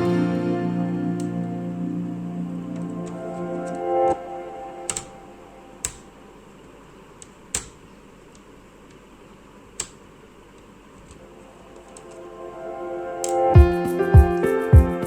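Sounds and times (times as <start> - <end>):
background music: 0.0 - 6.2, 11.3 - 15.0.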